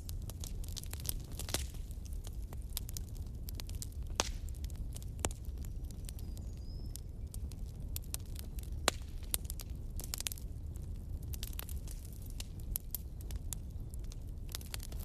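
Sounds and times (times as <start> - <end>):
low rumble of flames: 0.0 - 15.0
wood fire crackling and popping: 0.0 - 15.0.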